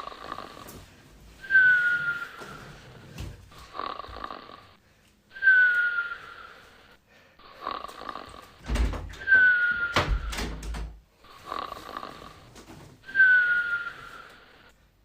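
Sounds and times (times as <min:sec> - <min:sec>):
person snoring: 0:00.0 - 0:04.8, 0:05.4 - 0:08.6, 0:11.2 - 0:12.5
high whistle while snoring: 0:01.4 - 0:03.1, 0:05.3 - 0:08.4, 0:09.2 - 0:10.3, 0:13.0 - 0:14.7.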